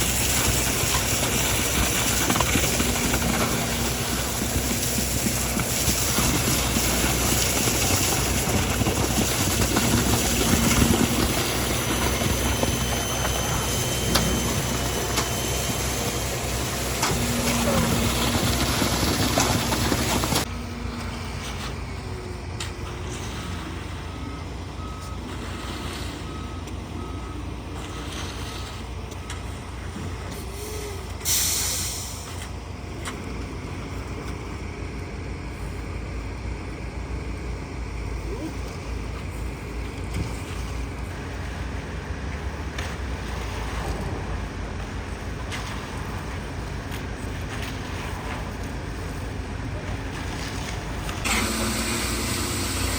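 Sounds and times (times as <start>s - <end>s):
heavy truck engine running: 0.0s - 52.9s
reversing beeper: 5.9s - 21.4s, 22.9s - 32.2s, 51.2s - 52.9s
air brakes hissing: 30.4s - 32.5s.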